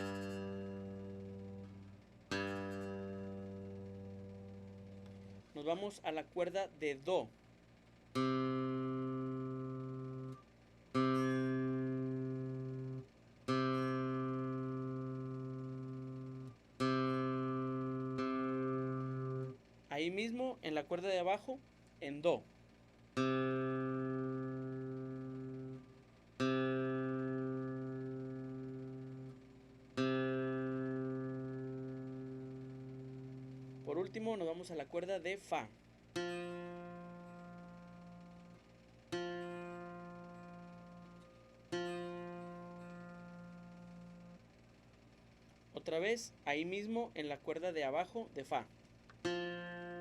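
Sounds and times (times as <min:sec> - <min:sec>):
plucked string note ringing: 0:00.0 - 0:05.4, 0:11.0 - 0:19.6, 0:23.2 - 0:34.2, 0:36.2 - 0:44.4, 0:49.2 - 0:50.0.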